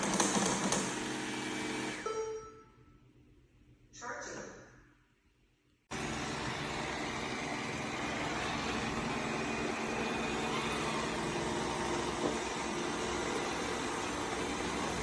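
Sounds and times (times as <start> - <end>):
robot vacuum whirring: 5.9 - 15.0.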